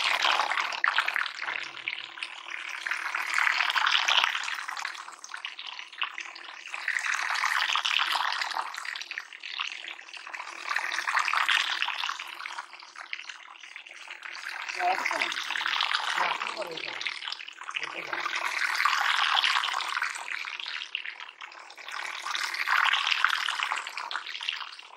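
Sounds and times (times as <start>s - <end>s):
water splashing and churning: 14.2s - 20.2s.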